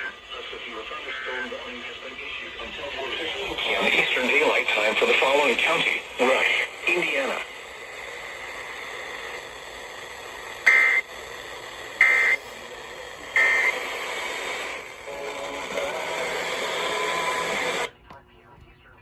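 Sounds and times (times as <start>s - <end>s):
radio receiver hissing: 0.0s - 17.9s
two-tone data bursts: 10.6s - 11.2s, 11.9s - 12.5s, 13.3s - 15.5s.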